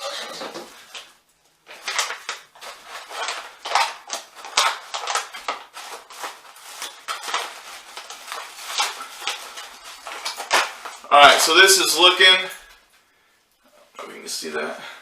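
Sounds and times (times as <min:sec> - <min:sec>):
foil pouch crinkling: 0:00.3 - 0:12.3
scissors cutting foil pouch: 0:01.8 - 0:11.0.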